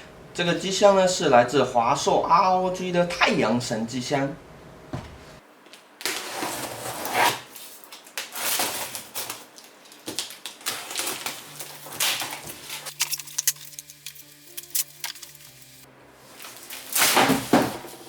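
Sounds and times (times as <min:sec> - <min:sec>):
cardboard and packing rustling: 0:06.1 - 0:14.0, 0:16.3 - 0:18.0.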